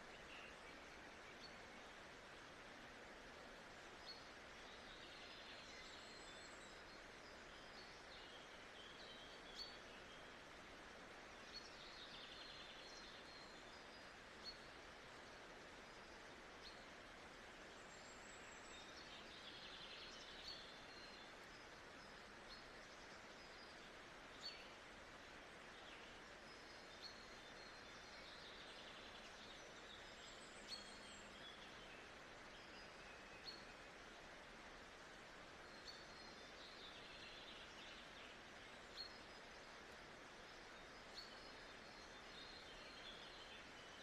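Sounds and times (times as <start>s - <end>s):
steady background hiss: 0.0s - 44.0s
small birds chirping: 17.6s - 44.0s.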